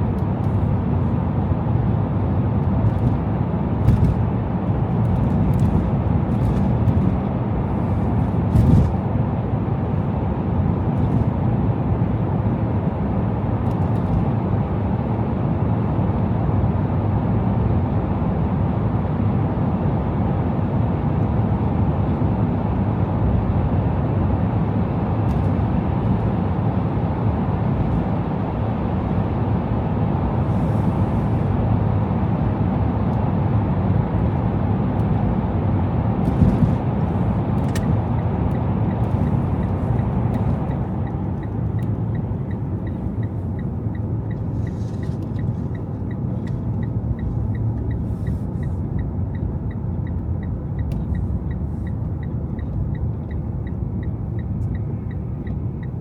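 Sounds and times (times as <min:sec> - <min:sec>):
car road and engine rumble: 0:00.0 - 0:56.0
light regular ticking: 0:38.5 - 0:56.0.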